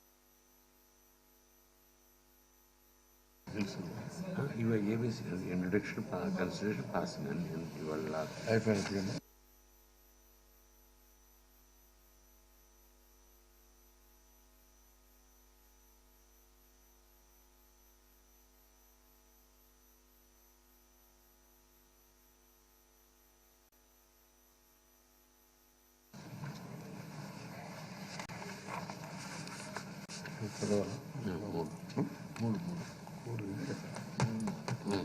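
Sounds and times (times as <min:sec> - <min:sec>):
faint electrical hum: 0:00.0 - 0:35.0
room sound: 0:03.4 - 0:09.2, 0:21.8 - 0:35.0.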